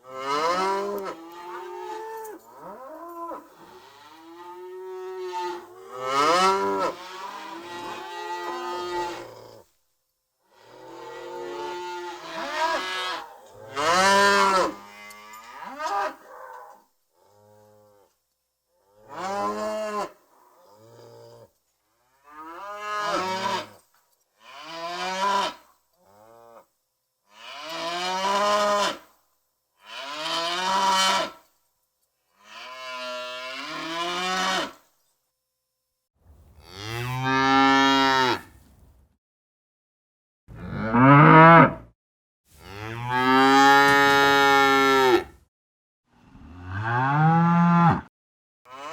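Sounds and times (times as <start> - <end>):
cows mooing: 36.6 - 38.5, 40.6 - 41.8, 42.6 - 45.3.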